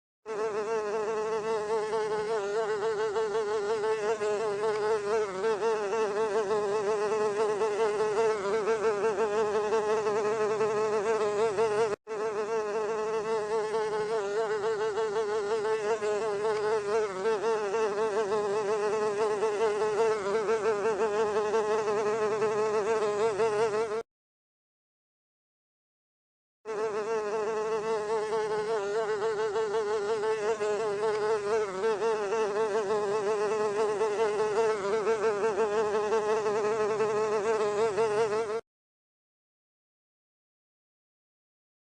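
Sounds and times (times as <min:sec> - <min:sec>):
mosquito buzzing: 0:00.2 - 0:24.1, 0:26.7 - 0:38.7.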